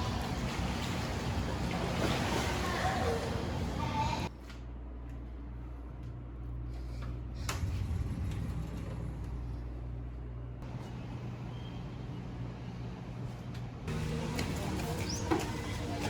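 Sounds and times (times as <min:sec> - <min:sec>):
engine rumbling: 0:00.0 - 0:04.3, 0:05.4 - 0:16.0.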